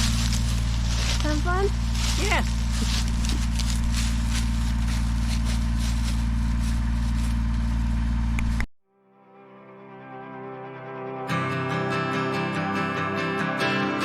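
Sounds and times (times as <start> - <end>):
engine running steadily: 0.0 - 8.7.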